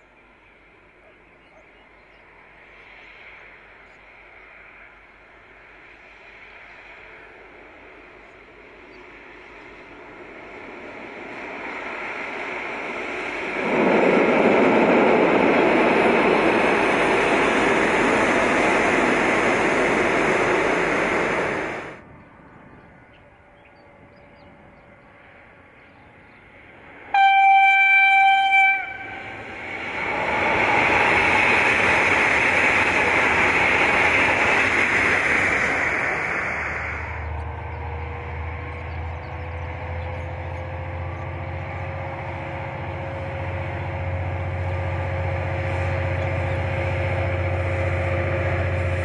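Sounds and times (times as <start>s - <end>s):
diesel train rushing past: 0.0s - 49.0s
train horn steady note: 27.1s - 29.5s.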